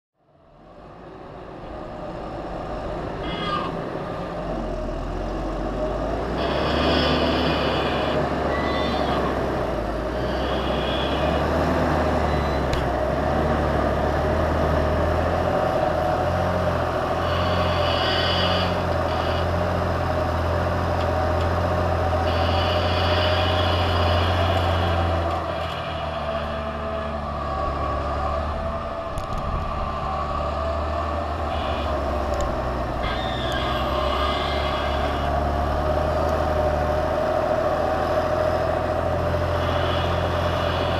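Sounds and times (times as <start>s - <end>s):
tractor diesel engine under load: 0.2s - 40.9s
high-pitched squeals: 3.1s - 4.0s, 6.1s - 13.1s, 15.6s - 20.2s, 21.6s - 37.3s, 38.2s - 40.9s.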